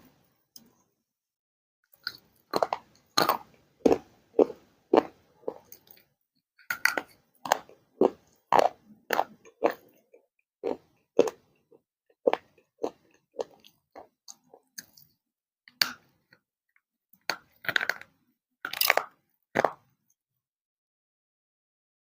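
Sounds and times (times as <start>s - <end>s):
crunchy chewing close up: 2.0s - 6.1s, 7.0s - 15.1s.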